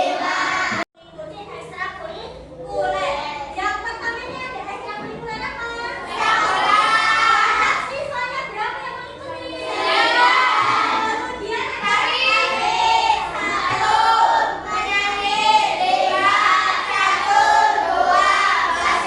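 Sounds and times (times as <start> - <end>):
children singing in unison: 0.0 - 0.8, 6.0 - 7.8, 9.5 - 11.2, 11.8 - 19.0.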